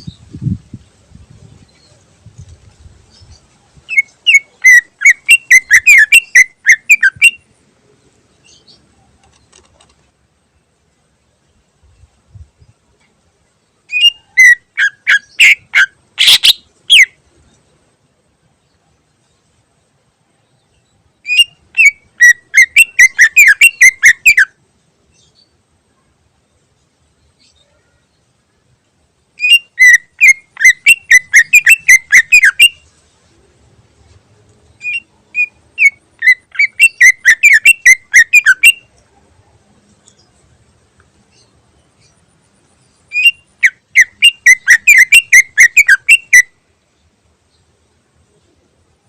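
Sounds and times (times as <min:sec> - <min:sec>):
bird singing whistled notes: 0:03.1 - 0:07.5, 0:13.9 - 0:17.2, 0:20.4 - 0:24.6, 0:29.4 - 0:32.8, 0:34.8 - 0:39.0, 0:41.3 - 0:46.6.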